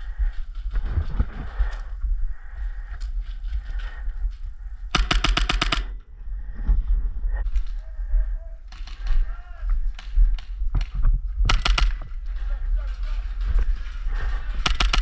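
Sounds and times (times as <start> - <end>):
airsoft gun firing burst: 5.0 - 5.9, 11.5 - 12.0, 14.6 - 15.0.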